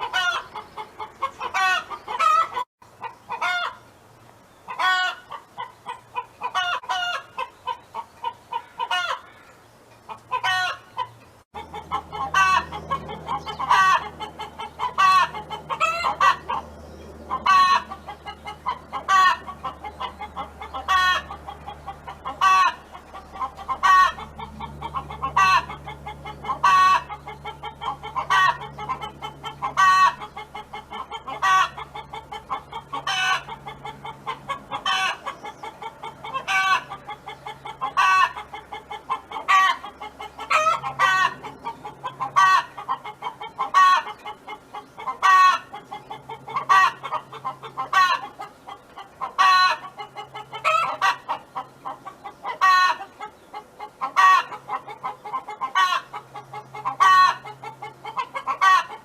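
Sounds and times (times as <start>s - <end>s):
hen clucking softly: 0.0s - 3.8s, 4.7s - 59.0s
hen calling: 4.7s - 16.7s.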